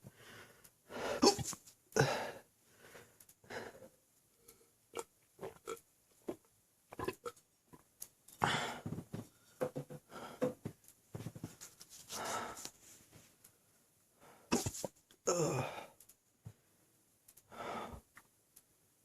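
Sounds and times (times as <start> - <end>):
man hiccuping: 1.2 - 1.6, 14.5 - 15.8.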